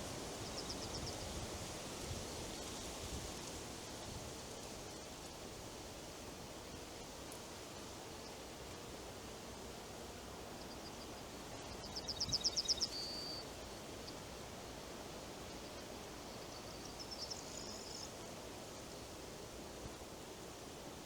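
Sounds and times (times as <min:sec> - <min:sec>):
wind rustling through trees: 0:00.0 - 0:21.0
songbird singing: 0:10.6 - 0:14.2, 0:15.5 - 0:18.2.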